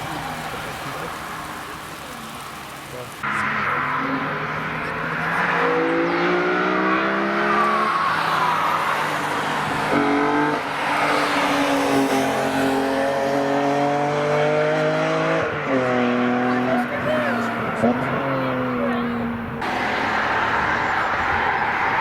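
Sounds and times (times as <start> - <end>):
tyres hissing on wet tarmac: 0.0 - 5.6, 10.6 - 13.2
car engine accelerating: 0.0 - 22.0.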